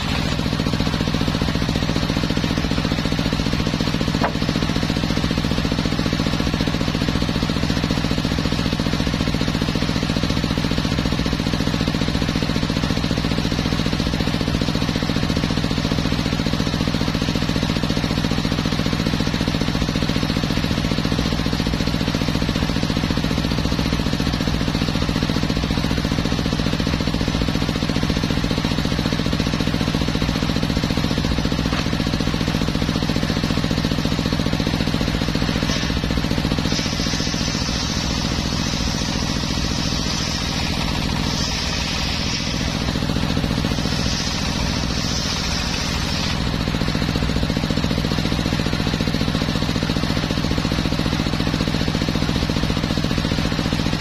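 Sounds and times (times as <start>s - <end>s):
saw blade cutting wood: 0.0s - 0.8s, 3.5s - 4.8s, 31.2s - 32.6s, 35.4s - 46.7s
sawmill engine droning: 0.0s - 54.0s.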